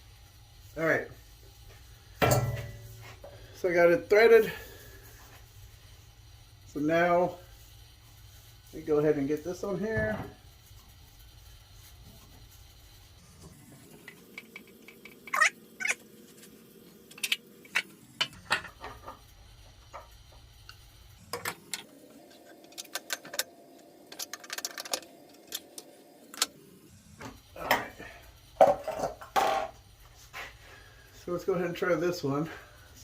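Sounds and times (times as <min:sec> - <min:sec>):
low hum: 0:10.3 - 0:28.6.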